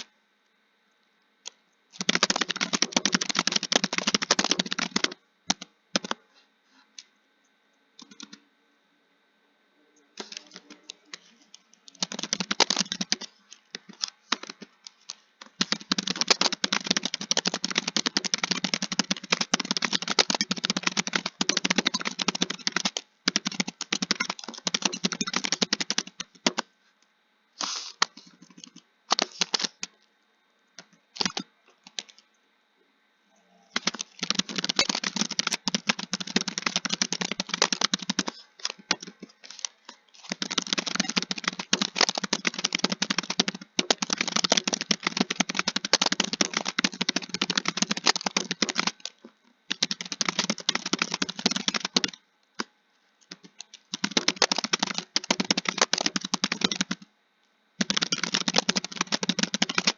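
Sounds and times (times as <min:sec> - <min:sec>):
keyboard typing: 0:01.4 - 0:06.2, 0:08.0 - 0:08.4, 0:10.2 - 0:26.7, 0:28.0 - 0:29.9, 0:30.8 - 0:32.2, 0:33.7 - 0:57.1, 0:57.8 - 0:59.9.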